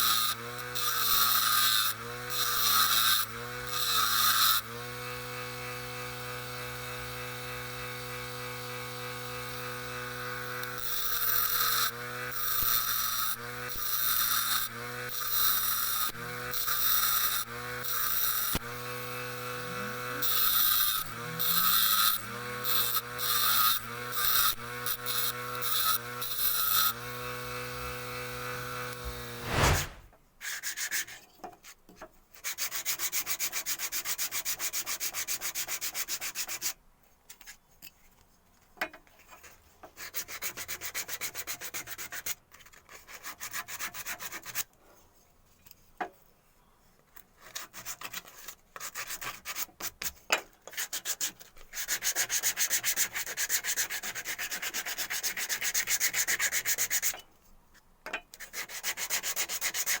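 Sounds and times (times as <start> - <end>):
sandpaper rubbing on wood: 29.0 - 30.1.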